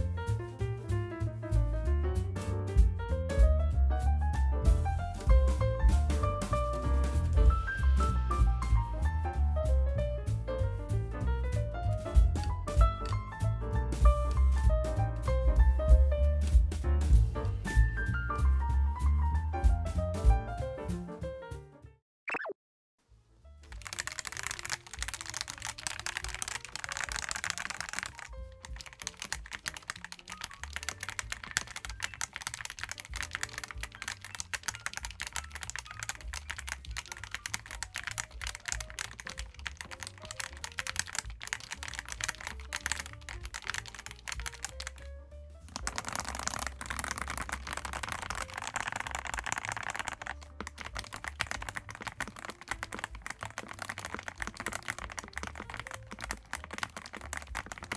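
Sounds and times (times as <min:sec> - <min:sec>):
quiet background music: 0:23.1 - 0:57.9
fast typing on mechanical keyboard: 0:23.7 - 0:45.1, 0:45.7 - 0:57.9.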